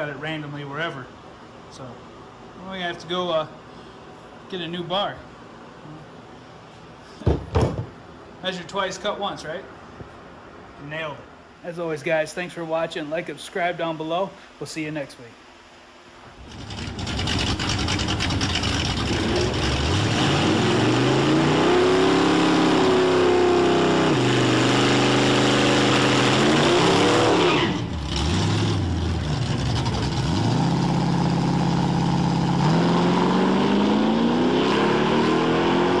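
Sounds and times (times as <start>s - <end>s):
car engine revving: 16.4s - 36.0s.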